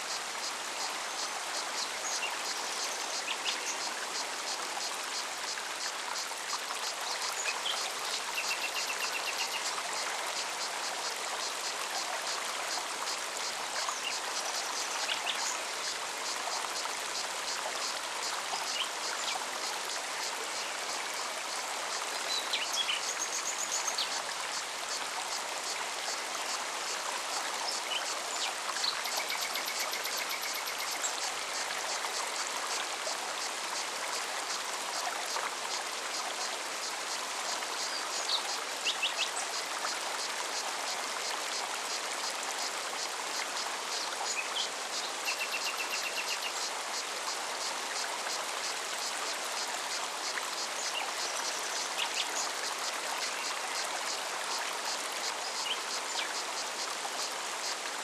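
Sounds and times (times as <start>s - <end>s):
stream running over rocks: 0.0s - 58.0s.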